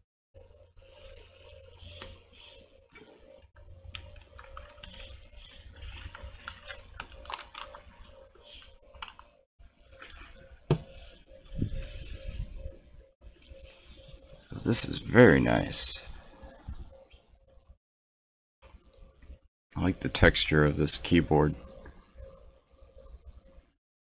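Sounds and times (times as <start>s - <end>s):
packaging crinkling and rustling: 3.9s - 9.3s, 10.0s - 11.0s.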